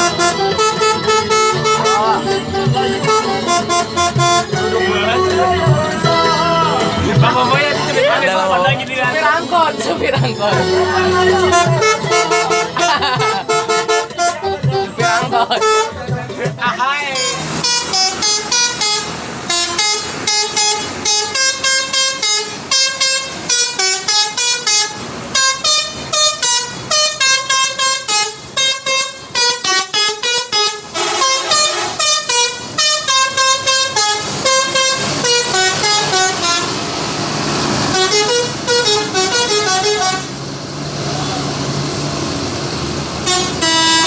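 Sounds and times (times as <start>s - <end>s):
musical air horn playing notes: 0.0s - 4.8s, 10.7s - 16.0s, 17.1s - 36.9s, 37.9s - 40.4s, 43.2s - 44.0s.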